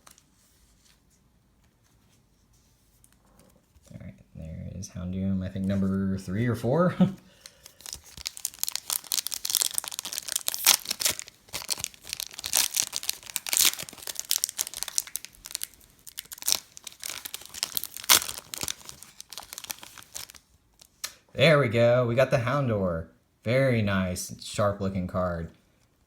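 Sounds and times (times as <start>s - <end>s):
plastic packaging crinkling: 7.3s - 21.1s.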